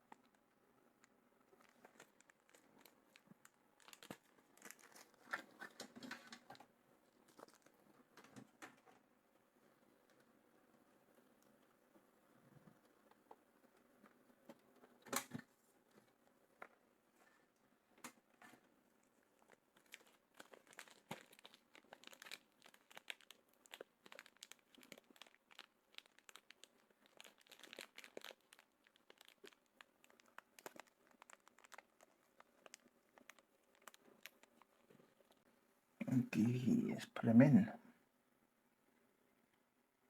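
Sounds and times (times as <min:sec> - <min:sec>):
clicks and packaging crinkling: 0:01.0 - 0:09.0, 0:18.0 - 0:35.4.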